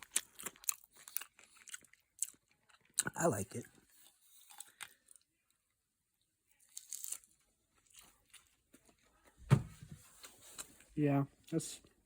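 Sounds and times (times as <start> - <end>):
soft eating crunches: 0.0 - 9.4.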